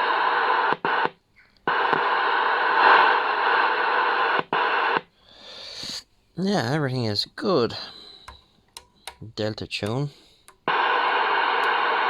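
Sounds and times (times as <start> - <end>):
radio static hiss: 0.0 - 6.7, 9.2 - 12.0
radio click: 0.2 - 5.1, 8.2 - 12.0.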